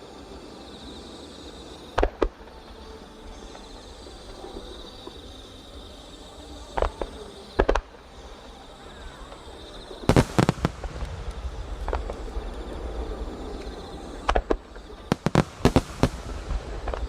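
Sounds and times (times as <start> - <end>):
high-pitched hiss: 0.0 - 17.0
fireworks bangs: 10.1 - 17.0.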